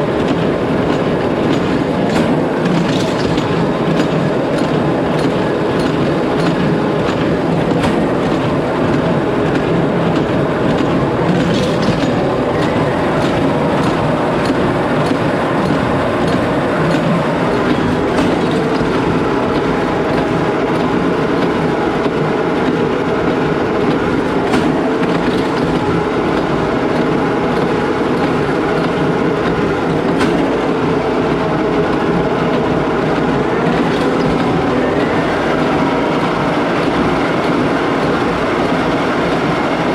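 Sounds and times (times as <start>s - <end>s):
tractor and baler running: 0.0s - 39.9s.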